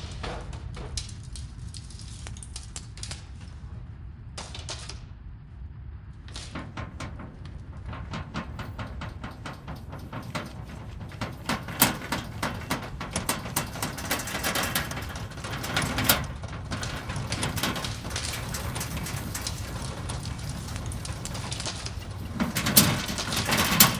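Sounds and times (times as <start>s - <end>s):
rapid knocks and rattles: 6.5s - 23.9s
low earthquake rumble: 6.6s - 23.9s.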